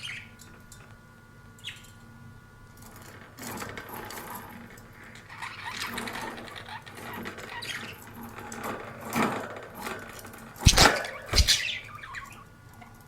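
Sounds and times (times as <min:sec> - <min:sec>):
budgerigars chirping: 0:05.3 - 0:08.1, 0:10.6 - 0:12.5
loud thumps: 0:10.6 - 0:11.7.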